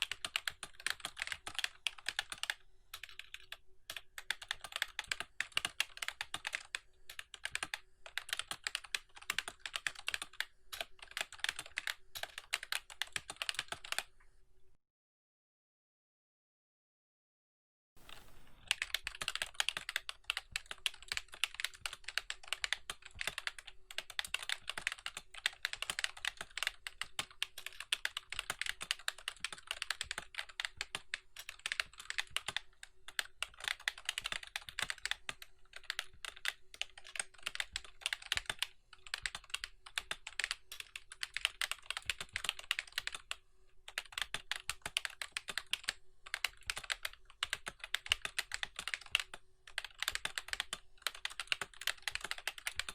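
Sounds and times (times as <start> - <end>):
fast keyboard typing: 0.0 - 14.1, 18.1 - 52.9.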